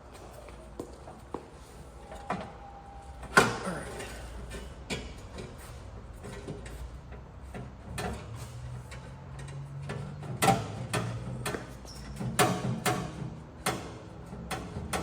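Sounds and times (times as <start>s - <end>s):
metal clanks and knocks: 3.3s - 15.0s.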